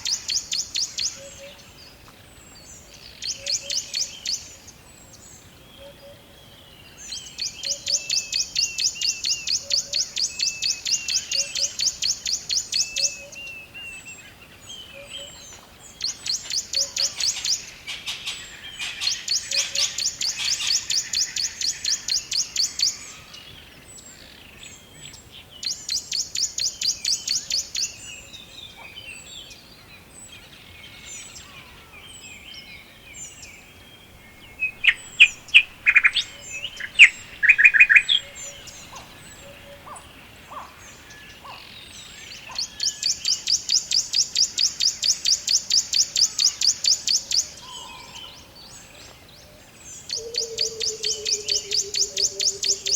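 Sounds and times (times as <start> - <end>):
songbird rapid trill: 34.0 - 48.2
faint bird chirps: 34.0 - 49.0.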